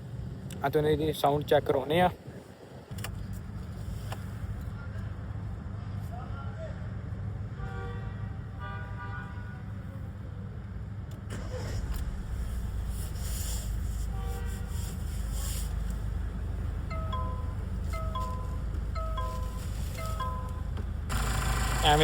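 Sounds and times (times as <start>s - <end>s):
diesel engine running: 11.3s - 22.0s.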